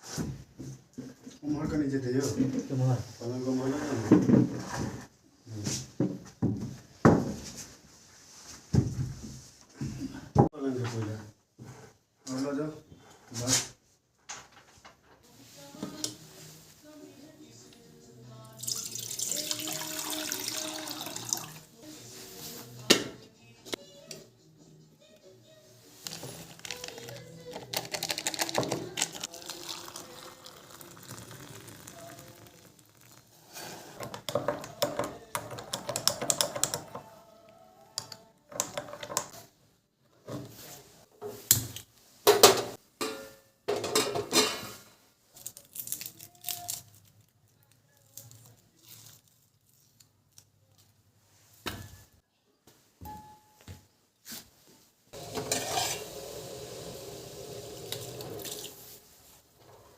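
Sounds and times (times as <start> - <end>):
dishes and utensils clattering: 42.2 - 44.9, 55.2 - 56.2.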